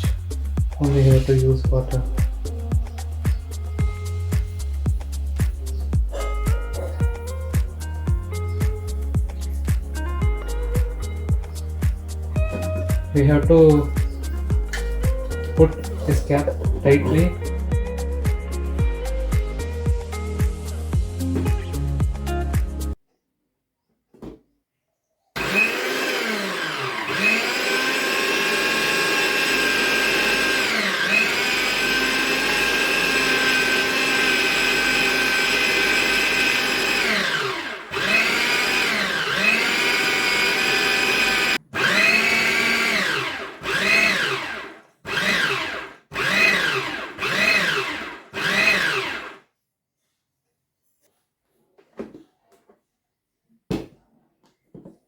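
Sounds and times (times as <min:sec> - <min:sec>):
mixer grinder motor whining: 0:00.0 - 0:17.6, 0:25.4 - 0:49.5.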